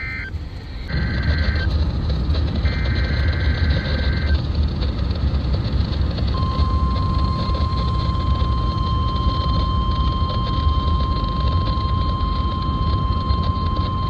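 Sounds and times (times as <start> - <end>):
warbling two-tone data chirp: 0.0 - 1.7, 2.6 - 4.4, 6.4 - 14.0
steady alarm tone: 0.0 - 1.8, 2.5 - 4.4, 6.4 - 14.0
low receiver noise rumble: 0.0 - 14.0.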